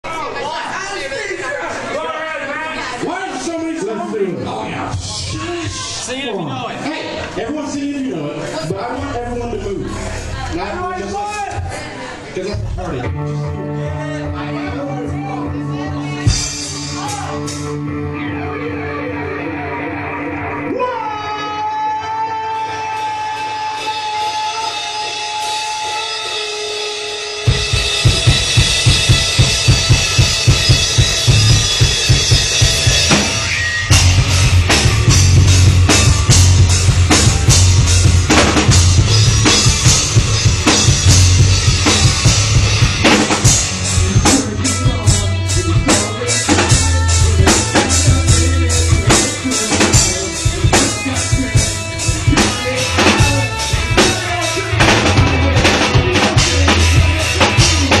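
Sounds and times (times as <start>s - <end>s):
live rock band playing: 6.9s - 58.0s
fast kick-drum beat: 27.5s - 58.0s.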